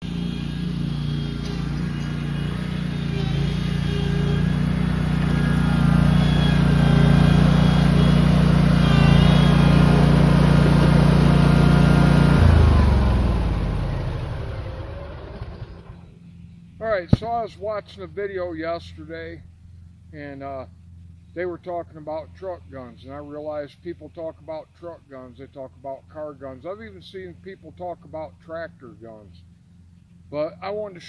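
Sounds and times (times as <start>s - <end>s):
lawn mower engine running: 0.0s - 17.2s.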